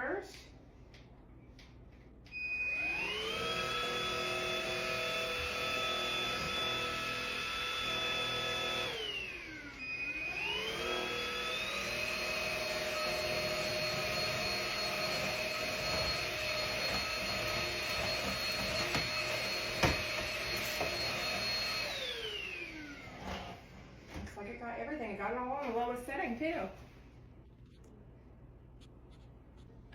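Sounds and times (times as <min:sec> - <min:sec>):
vacuum motor whining: 0:02.3 - 0:24.3.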